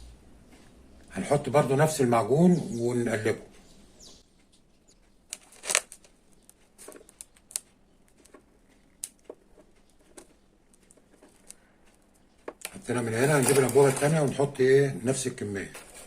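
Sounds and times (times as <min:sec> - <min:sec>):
small clicks taps and scrapes: 0:03.5 - 0:14.1.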